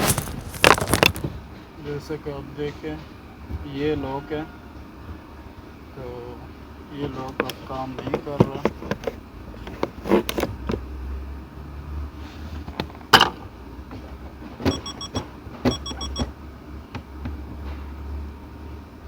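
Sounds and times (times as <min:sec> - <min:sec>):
faint high beeps: 0:14.7 - 0:16.3.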